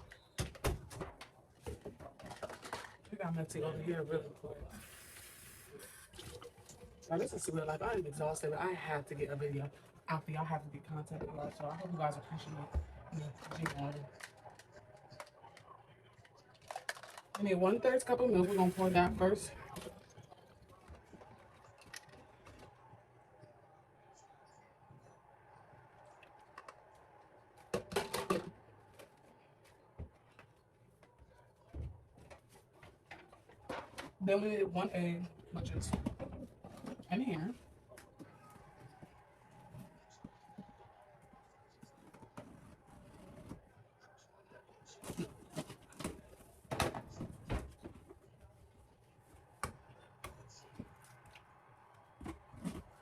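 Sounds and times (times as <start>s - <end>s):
kitchen items clicking and knocking: 0.0s - 3.1s.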